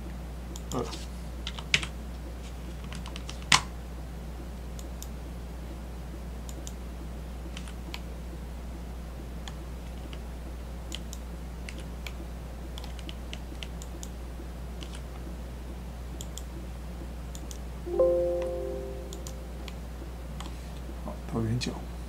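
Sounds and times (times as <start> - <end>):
short chime: 17.9 - 19.7.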